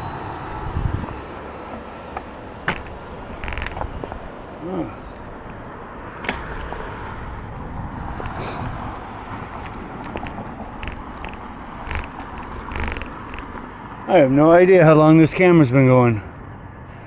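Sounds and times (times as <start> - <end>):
road traffic noise: 0.0 - 17.0
sharp clicks and rattles: 2.7 - 4.4, 9.6 - 13.7.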